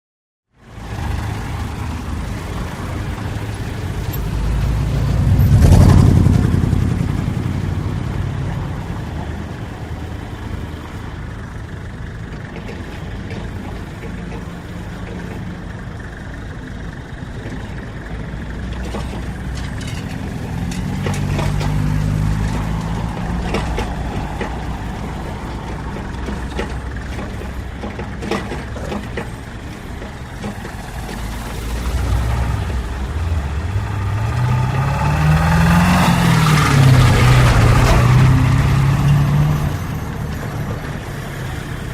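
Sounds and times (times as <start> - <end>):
loud vehicle passing: 0.6 - 12.1, 19.2 - 28.3, 29.8 - 41.9
vehicle engines running: 0.6 - 41.9
knocks and clanks: 12.2 - 15.6, 18.6 - 31.6.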